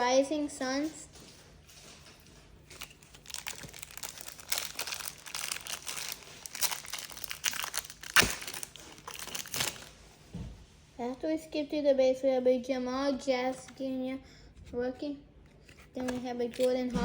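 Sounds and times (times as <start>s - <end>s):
card pack wrapper crinkling: 2.6s - 10.0s.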